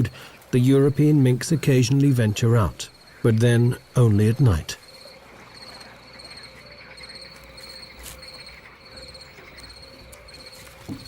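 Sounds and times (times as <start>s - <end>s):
crickets chirping: 0.0s - 11.0s.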